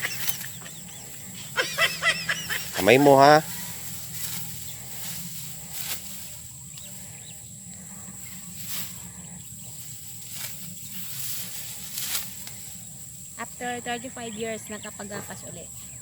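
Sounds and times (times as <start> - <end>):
sickle cutting dry stalks: 0.0 - 1.3, 1.9 - 7.2, 8.2 - 13.1
stalks rustling: 0.0 - 13.8.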